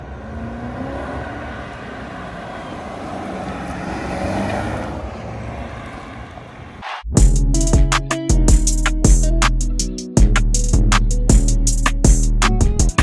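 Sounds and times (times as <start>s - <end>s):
road noise rush: 0.0s - 7.1s
vehicle engine running: 0.0s - 9.4s.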